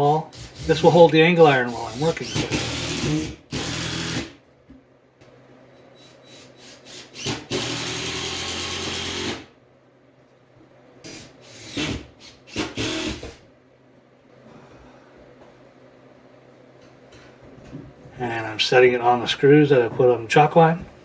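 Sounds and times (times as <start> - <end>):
power drill driving screws: 1.7 - 4.4, 6.0 - 9.4, 11.1 - 13.4.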